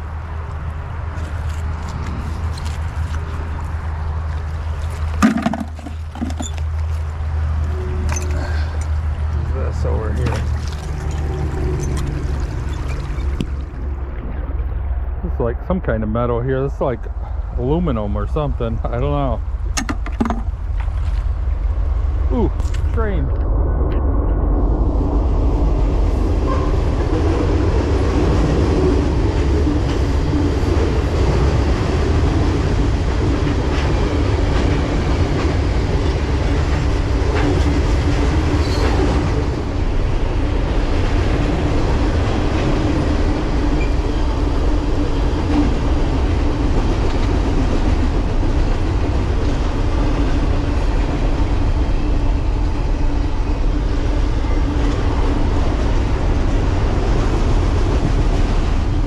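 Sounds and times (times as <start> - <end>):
train wheels on rails: 26.0 - 59.0.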